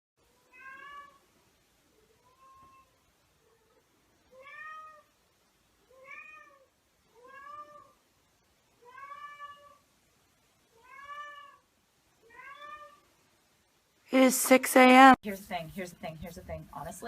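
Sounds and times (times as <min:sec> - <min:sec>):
cat meowing: 0:02.2 - 0:03.0, 0:04.3 - 0:05.1, 0:05.9 - 0:08.0, 0:08.8 - 0:09.8, 0:10.7 - 0:13.0.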